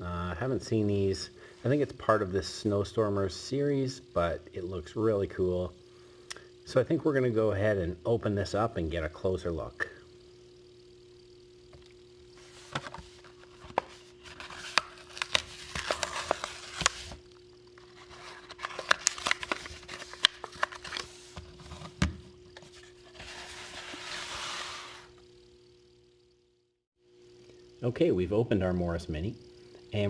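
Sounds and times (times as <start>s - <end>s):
packaging rustling: 12.4s - 17.2s, 17.8s - 21.5s
plastic packaging crackling: 18.4s - 21.1s.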